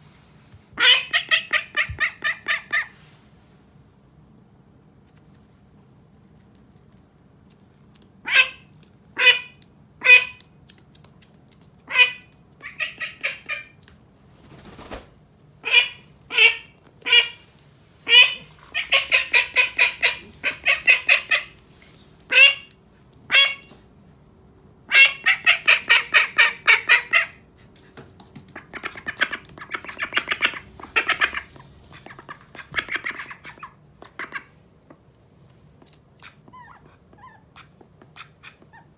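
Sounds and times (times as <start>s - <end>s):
duck quacking: 11.9s - 13.7s, 15.6s - 17.4s, 18.1s - 21.6s, 22.3s - 22.7s, 23.3s - 23.7s, 24.9s - 27.4s, 28.6s - 34.5s.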